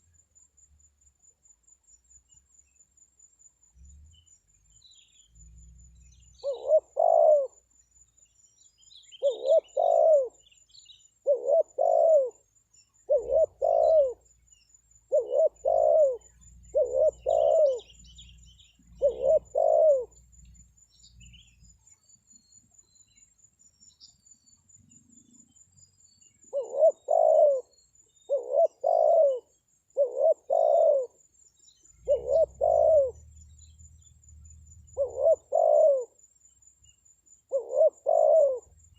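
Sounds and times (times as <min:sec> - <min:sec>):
dove cooing: 0:06.3 - 0:07.7, 0:09.1 - 0:10.5, 0:11.2 - 0:12.4, 0:13.0 - 0:14.3, 0:15.1 - 0:20.4, 0:26.4 - 0:31.2, 0:31.9 - 0:36.2, 0:37.5 - 0:38.9.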